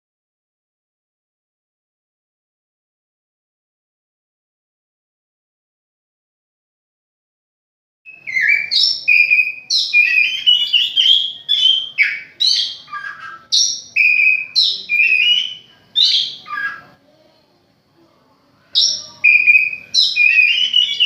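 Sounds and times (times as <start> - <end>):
bird singing whistled notes: 8.1 - 17.0, 18.8 - 21.0.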